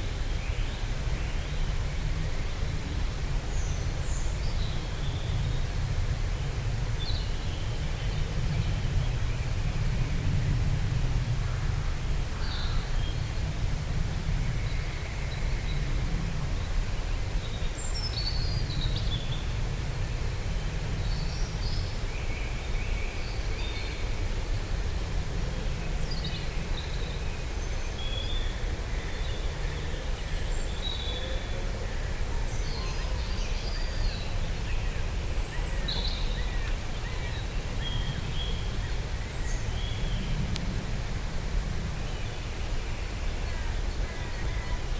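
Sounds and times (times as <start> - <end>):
soft wind rumbling: 31.5 - 44.9.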